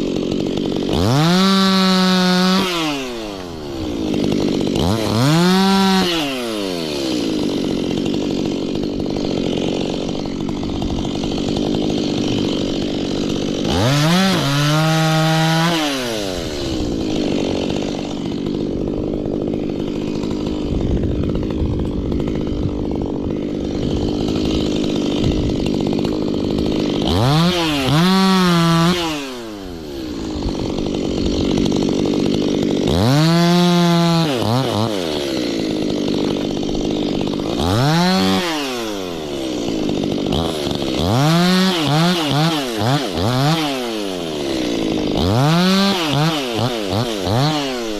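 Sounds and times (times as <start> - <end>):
chainsaw idling and revving: 0.0 - 47.9.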